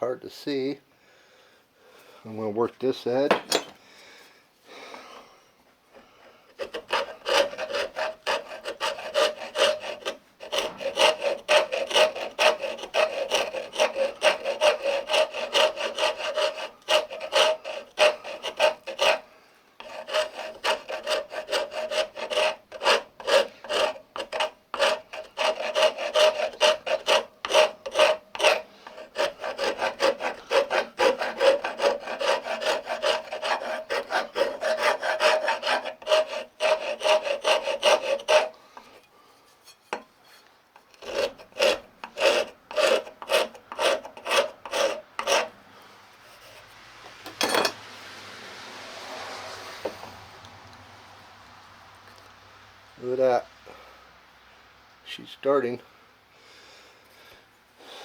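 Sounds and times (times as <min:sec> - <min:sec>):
rasp file scraping wood: 0:06.5 - 0:45.6, 0:46.2 - 0:46.8.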